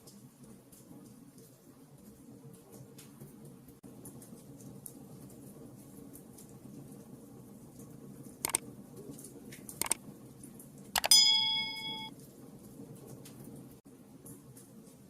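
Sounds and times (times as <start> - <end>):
wood fire crackling: 0.0 - 10.9
loud metallic clink: 11.1 - 12.1.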